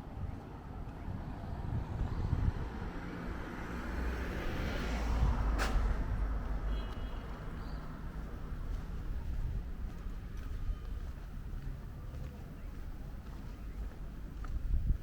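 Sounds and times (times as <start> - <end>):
wind rumble on microphone: 0.0 - 15.0
vehicle passing by: 1.5 - 10.5.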